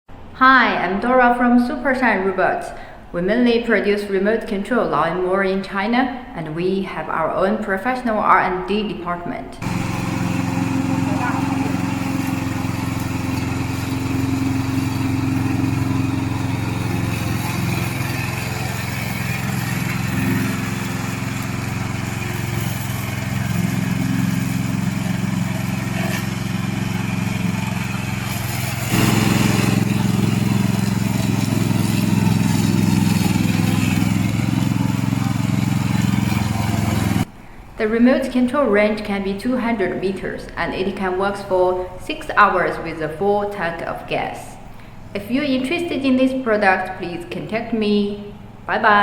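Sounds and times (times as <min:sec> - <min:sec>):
mower engine running: 0:09.6 - 0:37.3.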